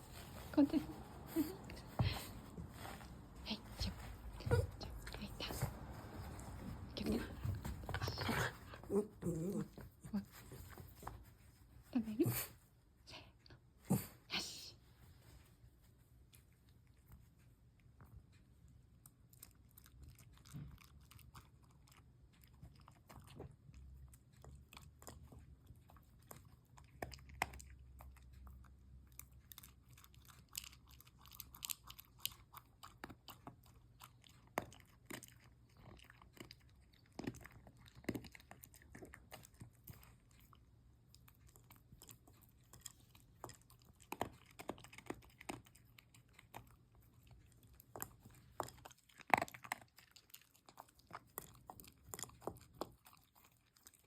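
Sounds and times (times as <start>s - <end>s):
dog chewing crunchy food: 19.1s - 54.0s.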